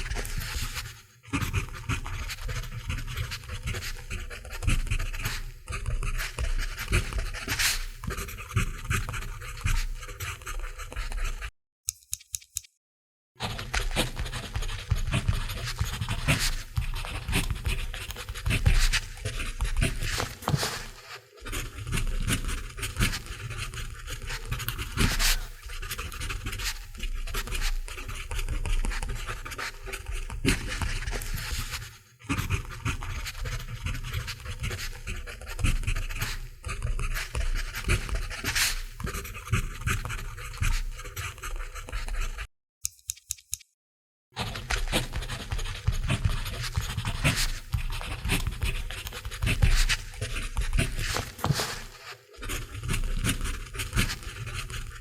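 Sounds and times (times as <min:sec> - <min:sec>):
pencil writing on paper: 0:00.0 - 0:11.5, 0:13.4 - 0:42.5, 0:44.4 - 0:55.0.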